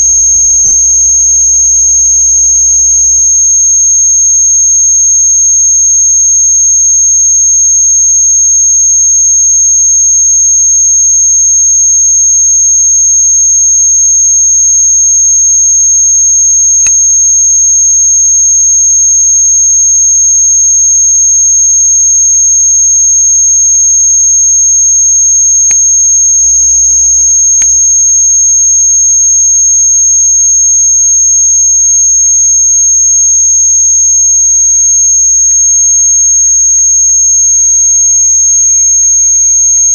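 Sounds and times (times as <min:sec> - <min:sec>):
buzzing burst: 0:00.0 - 0:03.5
high-pitched electronic tone: 0:00.0 - 0:03.5
low hum: 0:00.0 - 0:03.8, 0:26.3 - 0:28.0.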